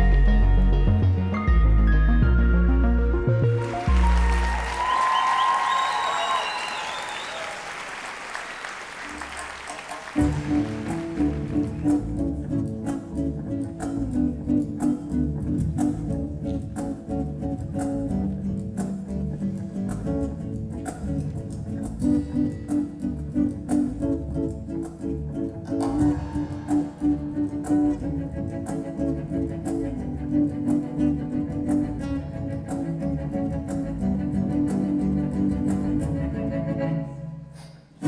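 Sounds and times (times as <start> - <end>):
double bass: 0.0 - 4.9, 10.2 - 37.8
plucked guitar: 0.0 - 4.9, 10.1 - 38.0
percussion beat: 3.6 - 29.0
bowed strings: 10.2 - 38.0.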